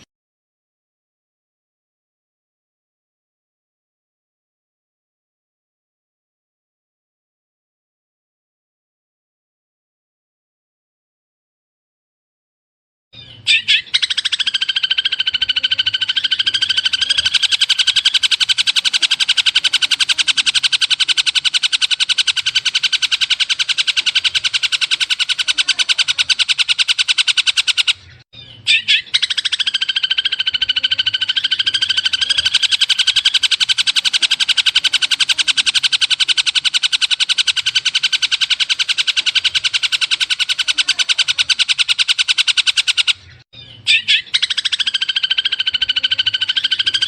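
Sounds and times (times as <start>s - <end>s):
pulsed bird trill: 13.2s - 47.0s
sharp bird notes: 13.2s - 47.0s.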